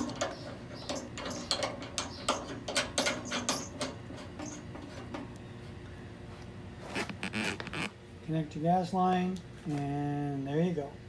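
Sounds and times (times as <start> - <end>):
grill clicks and knocks: 0.0 - 5.4.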